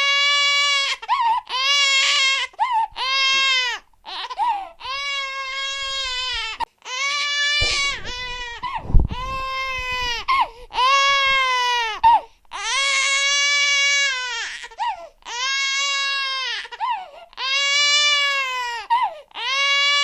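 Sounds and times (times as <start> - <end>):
infant crying: 0.0 - 8.6, 10.7 - 20.0
low bump: 7.6 - 10.5.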